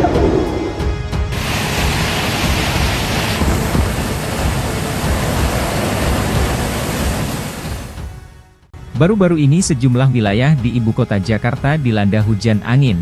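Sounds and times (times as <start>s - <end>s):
heavy rain in strong wind: 0.0s - 8.4s.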